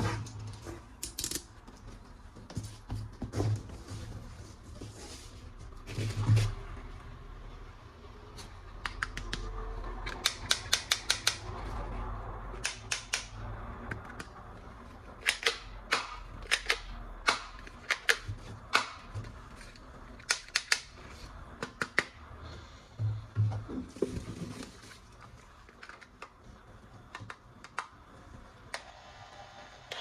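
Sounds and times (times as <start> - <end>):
plastic toy gun clicking: 10.1 - 11.4, 15.2 - 19.0.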